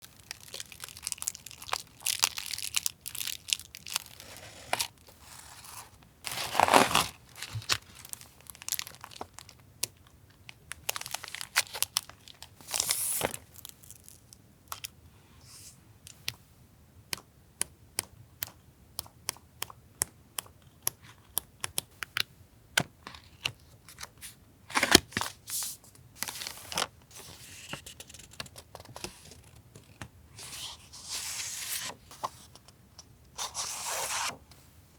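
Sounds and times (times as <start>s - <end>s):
paper and wrappers crinkling: 0.0s - 9.6s, 10.7s - 14.3s.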